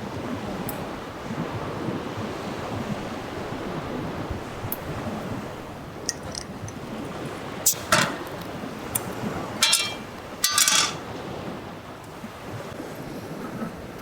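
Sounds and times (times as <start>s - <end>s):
wind: 0.0s - 14.0s
small hard objects clinking: 9.6s - 11.0s.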